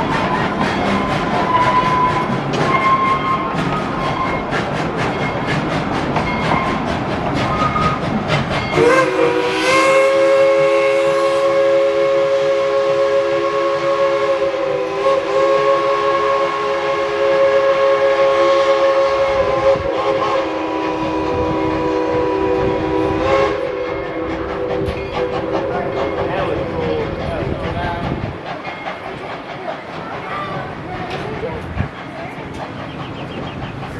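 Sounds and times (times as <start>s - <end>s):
steam locomotive whistle: 0.0s - 4.6s, 6.3s - 8.0s, 8.6s - 26.7s
rushing train noise: 0.0s - 33.9s.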